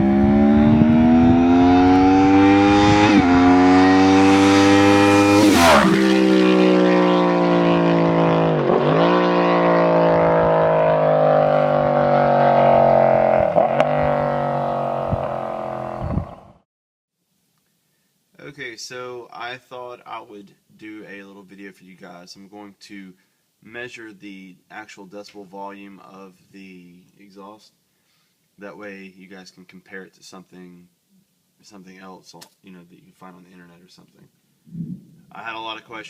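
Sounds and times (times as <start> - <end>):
motorcycle accelerating past: 0.0 - 16.6.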